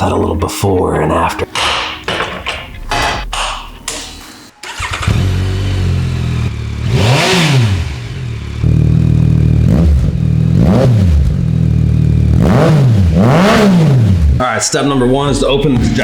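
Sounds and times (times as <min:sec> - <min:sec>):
engine throttle blips: 0:04.0 - 0:16.0
motorcycle engine idling: 0:04.6 - 0:12.4.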